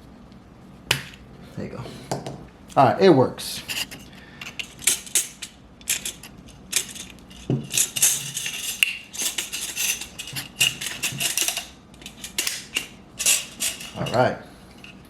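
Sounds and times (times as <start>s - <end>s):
small metal parts clinking: 4.4s - 14.2s.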